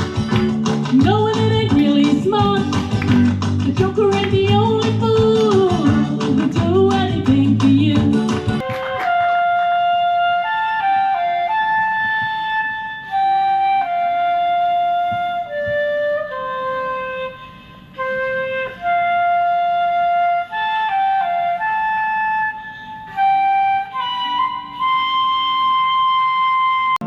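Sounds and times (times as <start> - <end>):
flute playing slow melody: 8.6 - 27.0.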